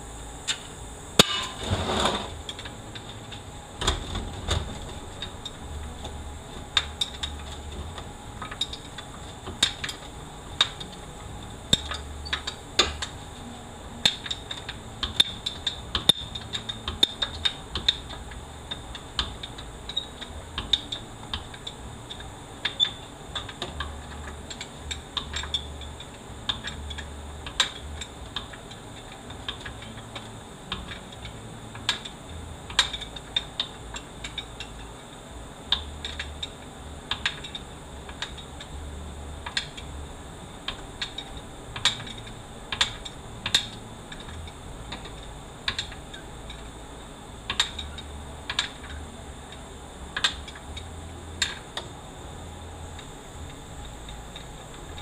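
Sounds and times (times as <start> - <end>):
metal scraping rattle: 0.5 - 30.2.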